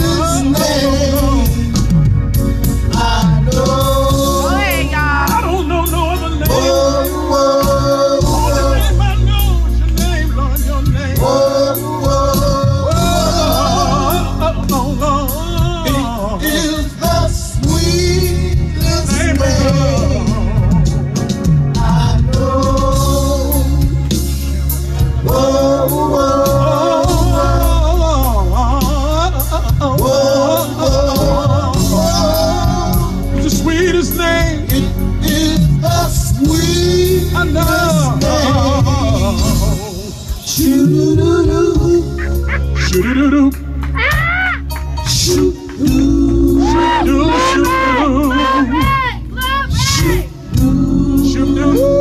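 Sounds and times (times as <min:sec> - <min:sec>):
male vocal group singing: 0:00.0 - 0:44.2, 0:45.0 - 0:52.0
band accompaniment with drums: 0:00.0 - 0:52.0
instrumental backing with low bass: 0:00.0 - 0:52.0.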